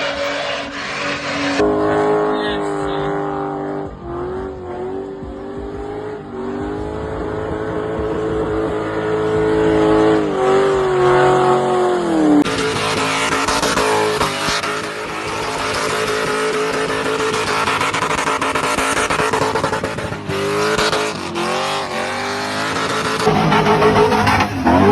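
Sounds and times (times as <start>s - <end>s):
car engine at high revs: 0.0s - 24.9s
tyre squeal: 22.6s - 24.9s.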